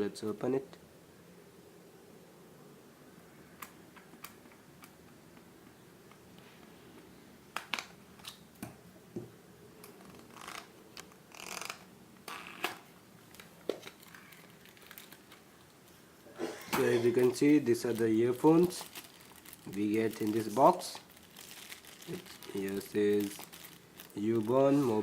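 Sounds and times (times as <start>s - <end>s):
packaging rustling: 13.2s - 15.7s, 16.8s - 25.0s.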